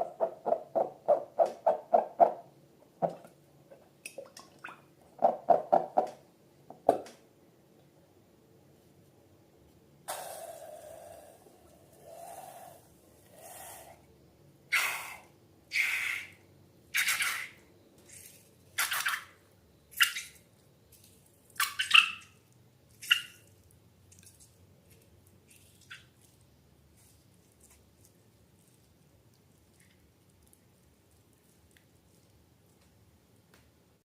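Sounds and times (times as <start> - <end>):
slime squelching: 20.0 - 33.1.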